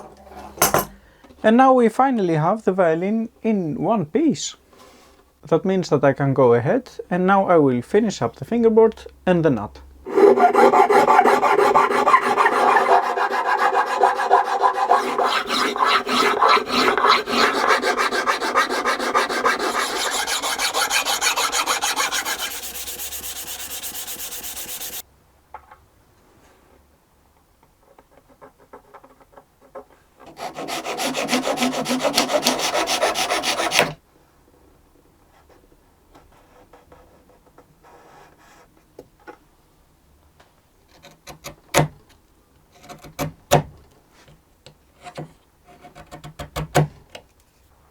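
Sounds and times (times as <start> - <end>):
filing on wood: 10.1 - 25.0, 30.3 - 34.0.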